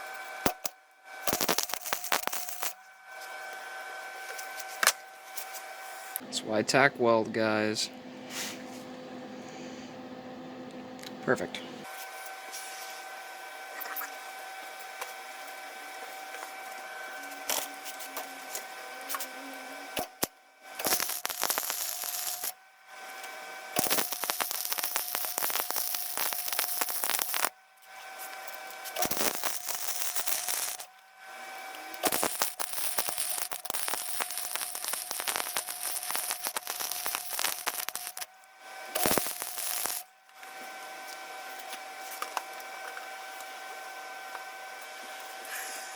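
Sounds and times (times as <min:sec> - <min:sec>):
arc welder crackling: 0:00.0 - 0:03.6, 0:13.5 - 0:43.5
welder hum: 0:00.0 - 0:45.9.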